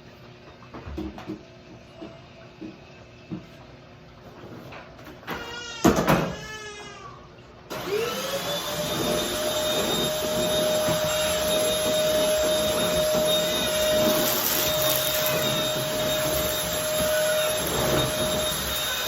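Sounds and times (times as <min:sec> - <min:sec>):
vacuum cleaner motor whine: 0:07.7 - 0:19.0.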